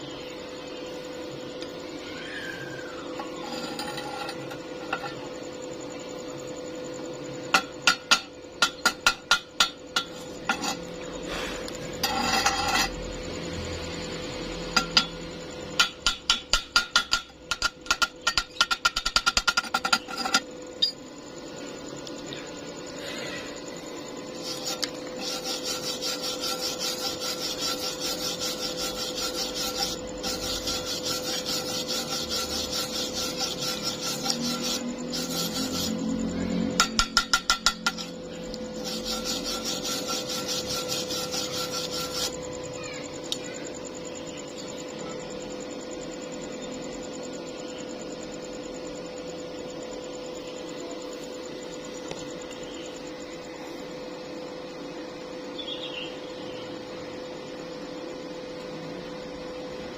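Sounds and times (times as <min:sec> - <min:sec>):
steady hum: 0:00.0 - 0:59.9
rhythmic rasping on metal: 0:07.5 - 0:11.0, 0:11.9 - 0:13.1, 0:14.7 - 0:20.9, 0:24.3 - 0:42.4.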